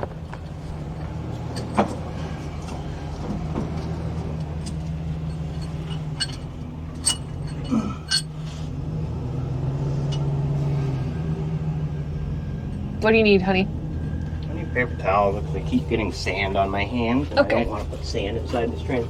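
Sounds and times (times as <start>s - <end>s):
engine idling: 0.0s - 19.0s
metallic clinks of tools: 4.6s - 8.4s.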